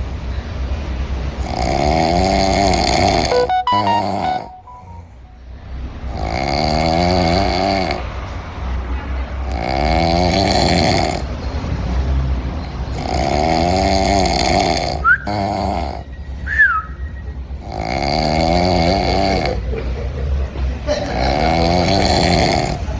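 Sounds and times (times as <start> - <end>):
rattling snores: 1.4 - 3.3, 6.0 - 8.1, 9.4 - 11.3, 12.9 - 16.1, 17.6 - 19.7, 21.1 - 22.9
whistling squeaks: 16.1 - 17.4.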